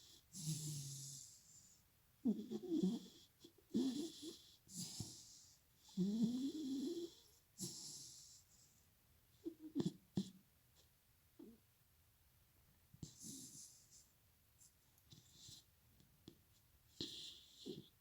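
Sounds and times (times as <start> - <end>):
dog snoring: 0.0 - 8.4, 9.4 - 10.4, 13.0 - 14.0, 15.1 - 15.6, 16.9 - 17.9.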